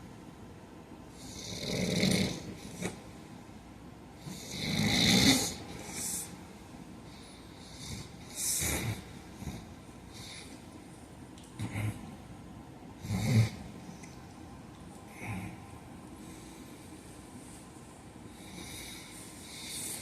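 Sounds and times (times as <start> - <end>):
man snoring: 1.2 - 3.0, 4.2 - 6.2, 13.0 - 13.7.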